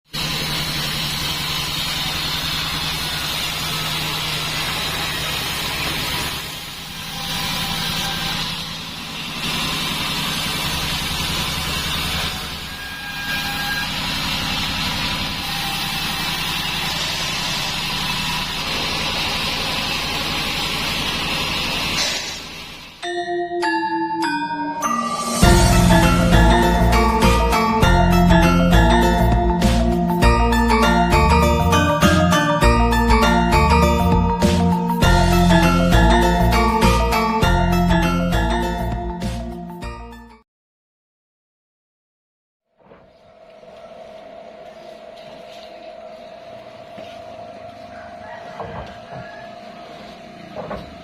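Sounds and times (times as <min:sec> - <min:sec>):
sawmill machine hum: 0:00.1 - 0:39.7, 0:43.0 - 0:51.0
saw blade hissing through timber: 0:00.2 - 0:22.8.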